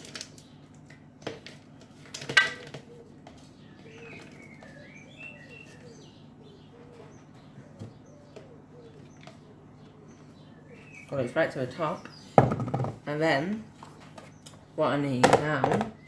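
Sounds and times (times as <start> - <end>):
frozen berries clattering into blender: 0.0 - 2.9
faint bird chirps: 2.6 - 11.3.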